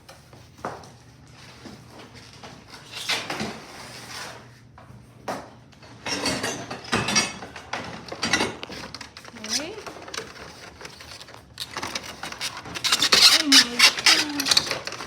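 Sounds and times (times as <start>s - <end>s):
packaging rustling and scraping: 1.4s - 4.6s, 7.7s - 15.0s.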